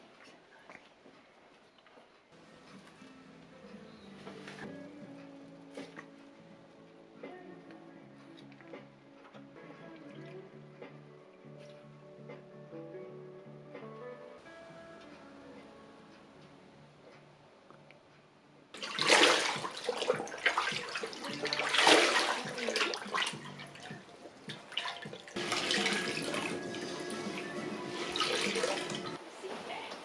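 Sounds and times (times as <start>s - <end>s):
faint soft music: 0.0s - 30.0s
water splashing and pouring: 18.8s - 29.2s.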